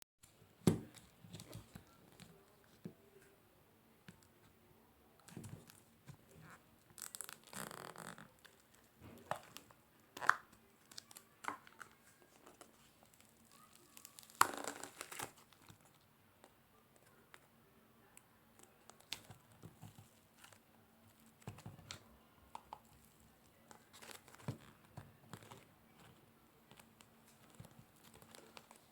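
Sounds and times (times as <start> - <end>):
slime crackling when stretched: 10.2 - 15.4.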